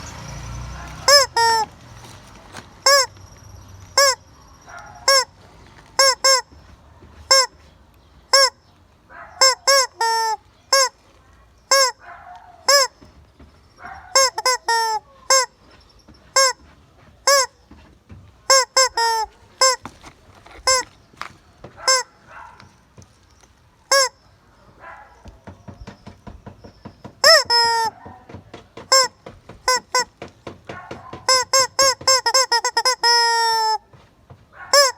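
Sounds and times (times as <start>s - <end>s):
chicken squawking: 0.8s - 1.8s, 2.8s - 3.1s, 4.0s - 5.4s, 6.0s - 6.6s, 7.3s - 7.6s, 8.3s - 8.6s, 9.2s - 11.0s, 11.7s - 13.0s, 13.8s - 15.7s, 16.4s - 16.6s, 17.3s - 17.6s, 18.5s - 20.9s, 21.7s - 22.6s, 23.9s - 24.2s, 27.2s - 28.3s, 28.9s - 33.9s, 34.6s - 34.9s.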